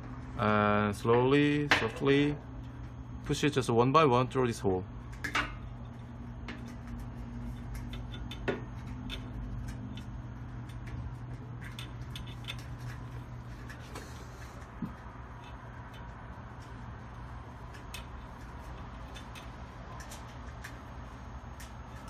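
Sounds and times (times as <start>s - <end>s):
cables clicking and rustling: 0.0s - 22.0s
steady low hum: 0.0s - 22.0s.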